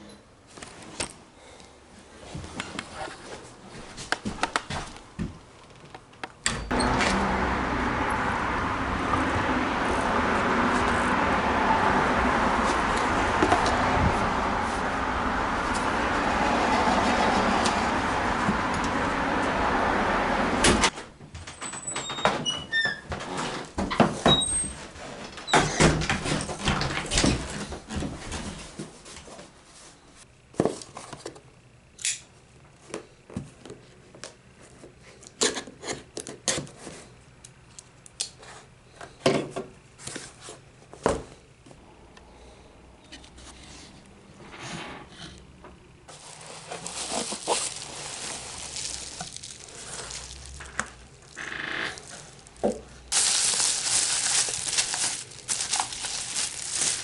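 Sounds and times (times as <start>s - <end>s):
rustling or scraping: 46.1s - 57.0s.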